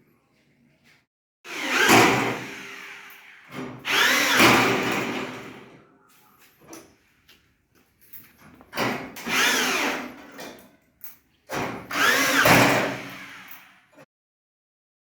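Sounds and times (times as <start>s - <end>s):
electric drill whirring: 1.5s - 5.7s, 9.2s - 10.3s, 11.9s - 14.0s.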